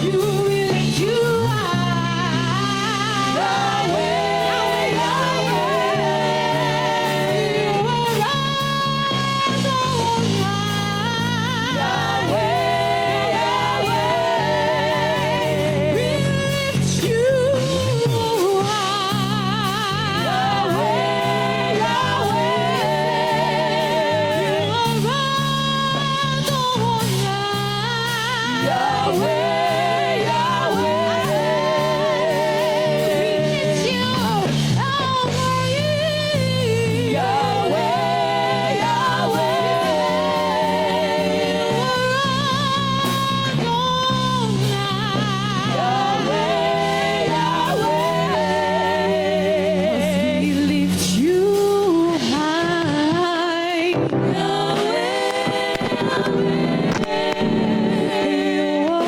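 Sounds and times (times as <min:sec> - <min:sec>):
sustained keyboard chords: 0:53.9 - 0:59.0.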